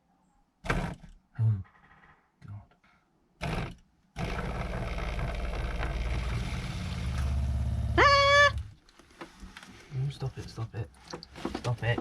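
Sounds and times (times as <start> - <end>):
electric water pump humming: 3.4 - 8.7
person crying out: 8.0 - 8.6.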